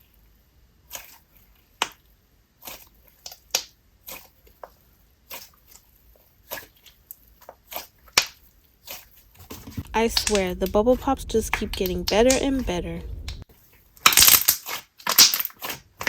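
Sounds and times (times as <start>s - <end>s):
slime worked by hand: 0.8s - 10.4s, 14.0s - 16.0s.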